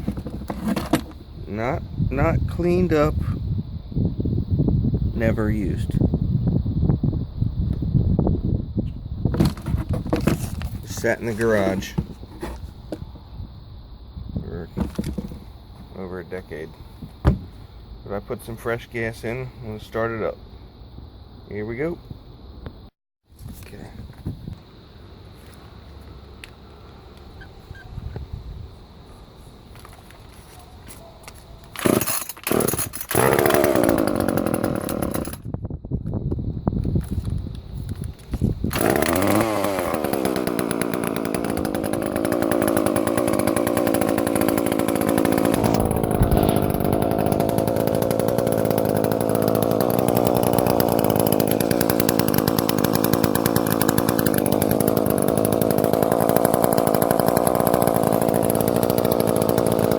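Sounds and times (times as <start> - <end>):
chainsaw starting and running: 9.4 - 12.1, 31.8 - 35.5, 38.7 - 59.9.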